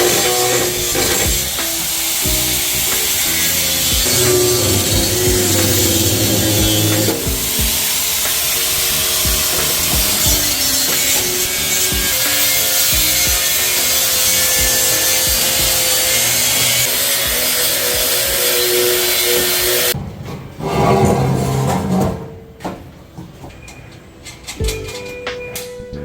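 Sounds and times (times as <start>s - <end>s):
power tool cutting: 0.0s - 20.0s.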